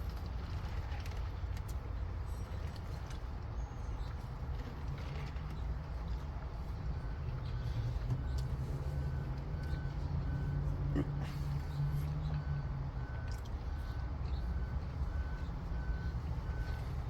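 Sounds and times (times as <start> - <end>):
low engine rumble: 0.0 - 17.0
vehicle reversing alarm beeping: 6.4 - 17.0.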